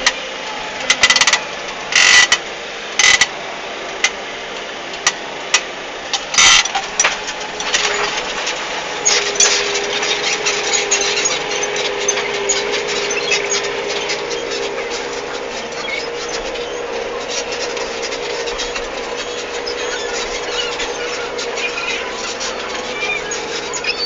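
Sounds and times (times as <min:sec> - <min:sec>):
tractor engine running: 0:00.0 - 0:24.0
clicking and rattling: 0:05.0 - 0:24.0.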